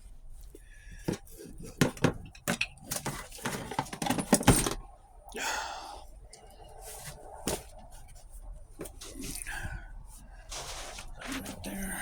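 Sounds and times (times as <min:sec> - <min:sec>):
metal parts clinking: 0:02.3 - 0:04.8
scraping rustle: 0:10.1 - 0:12.0.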